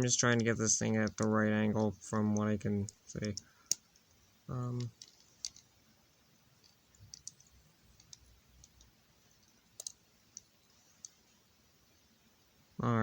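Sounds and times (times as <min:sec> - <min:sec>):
plastic toy bricks clicking: 0:04.8 - 0:05.6.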